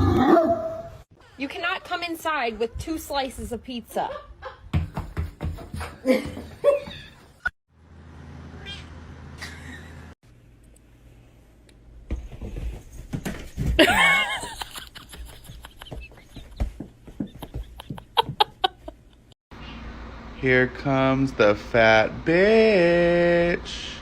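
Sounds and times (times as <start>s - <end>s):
cat meowing: 8.6s - 9.0s.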